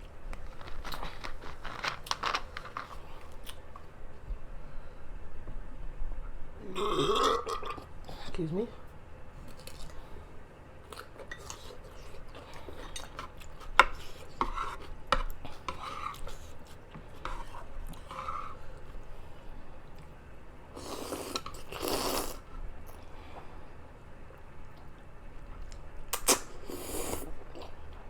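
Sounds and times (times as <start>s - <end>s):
chewing and smacking: 0.3s - 3.9s.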